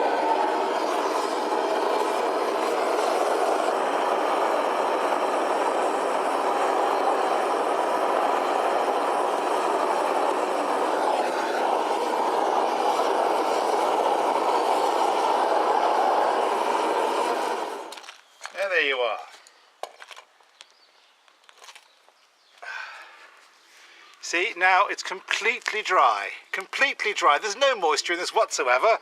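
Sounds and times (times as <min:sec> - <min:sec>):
pan of water heating: 0:00.0 - 0:18.8.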